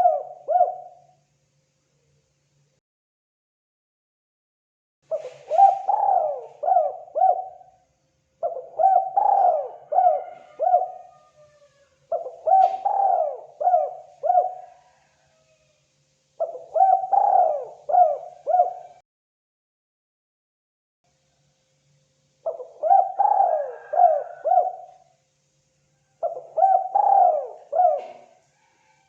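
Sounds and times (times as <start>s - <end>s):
dove cooing: 0.0s - 1.1s, 5.1s - 7.8s, 8.4s - 15.5s, 16.4s - 19.0s, 22.4s - 25.0s, 26.1s - 29.0s.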